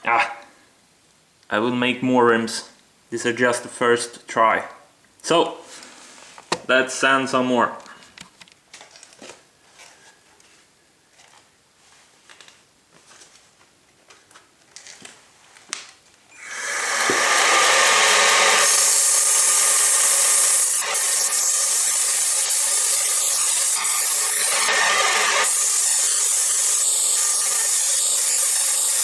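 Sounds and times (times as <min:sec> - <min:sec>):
sandpaper on spinning metal rim: 0:16.5 - 0:29.0.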